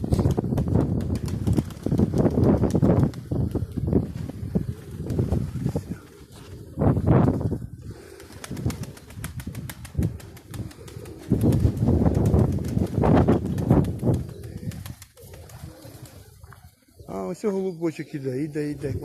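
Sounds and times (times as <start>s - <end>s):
wind buffeting microphone: 0.0s - 16.7s
wings flapping: 0.0s - 16.8s
pigeons cooing: 3.3s - 12.5s, 14.0s - 19.0s.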